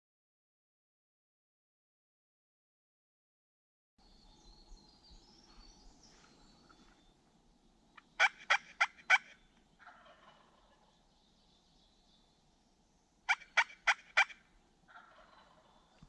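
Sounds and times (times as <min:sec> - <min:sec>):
turkey gobbling: 0:08.0 - 0:11.0, 0:13.3 - 0:15.9.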